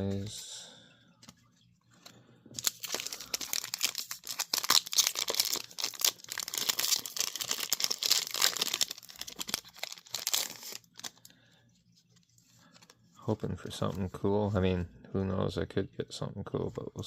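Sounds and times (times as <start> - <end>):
foil wrapper crinkling and tearing: 2.6 - 11.2.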